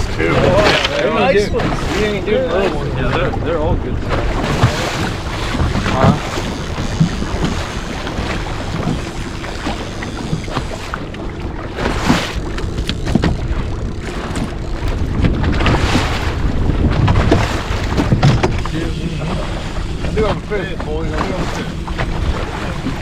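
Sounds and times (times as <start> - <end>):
boat motor running: 0.0 - 23.0
water noise: 0.0 - 23.0
wind buffeting microphone: 0.0 - 23.0
knocks on boat: 4.0 - 20.4.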